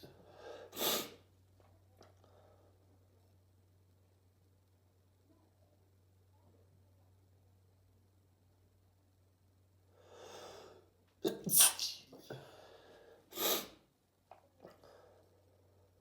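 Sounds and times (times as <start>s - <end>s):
person sneezing: 0.8s - 1.2s, 11.2s - 12.4s, 13.4s - 13.8s.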